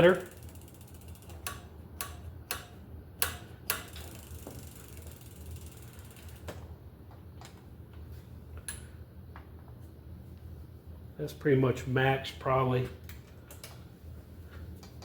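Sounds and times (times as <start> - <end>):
bicycle brake ratcheting clicks: 0.0 - 6.6.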